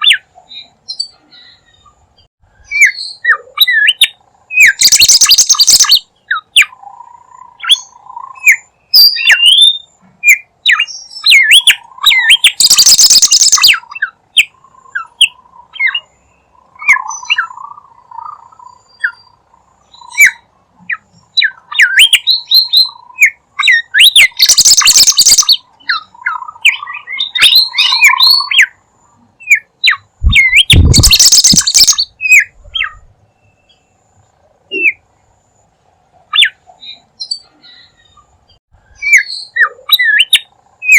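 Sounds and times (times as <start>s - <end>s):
songbird chirping and warbling: 0.0s - 40.9s
harsh rasping bird calls: 2.7s - 33.8s.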